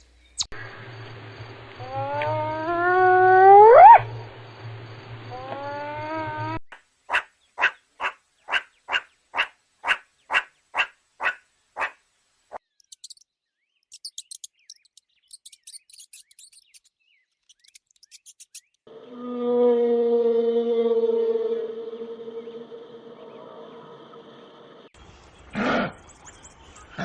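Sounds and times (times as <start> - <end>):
rising whining animal call: 1.8 - 4.3, 5.2 - 6.6, 18.9 - 24.9
high-pitched chirping clicks: 12.8 - 18.8.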